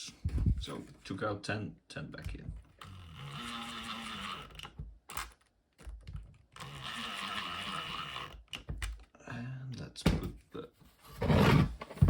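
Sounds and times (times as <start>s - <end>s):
powered screwdriver whirring: 2.8s - 5.4s, 6.5s - 8.7s.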